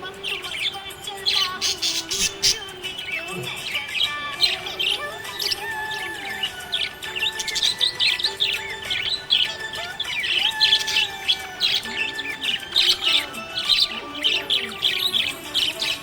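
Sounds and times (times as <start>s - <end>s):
parrots chirping rapidly: 0.0s - 16.0s.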